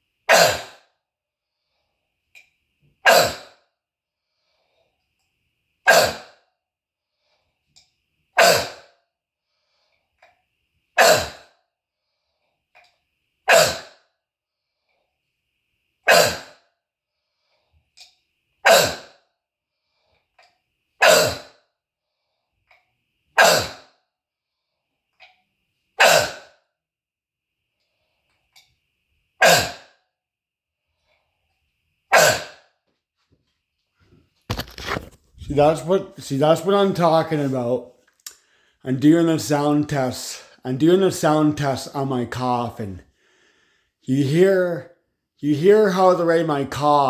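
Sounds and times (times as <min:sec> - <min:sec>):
harsh croup cough: 0:00.3 - 0:00.8, 0:03.0 - 0:03.6, 0:05.9 - 0:06.3, 0:08.4 - 0:08.9, 0:11.0 - 0:11.5, 0:13.5 - 0:14.0, 0:16.1 - 0:16.5, 0:18.7 - 0:19.1, 0:21.0 - 0:21.5, 0:23.4 - 0:23.8, 0:26.0 - 0:26.5, 0:29.4 - 0:29.8, 0:32.1 - 0:32.6
man coughing harshly: 0:21.0 - 0:21.5
short breath in: 0:38.3 - 0:38.8, 0:43.1 - 0:44.0.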